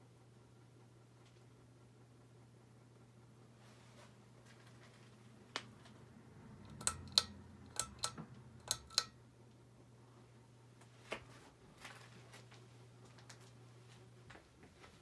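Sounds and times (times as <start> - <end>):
steady low hum: 0.0 - 15.0
ceiling fan switch clicks: 6.6 - 9.2.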